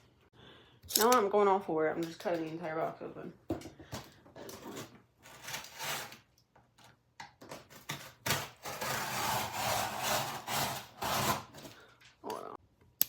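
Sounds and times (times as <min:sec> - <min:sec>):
blade cutting cardboard: 0:04.8 - 0:06.3, 0:07.6 - 0:11.7.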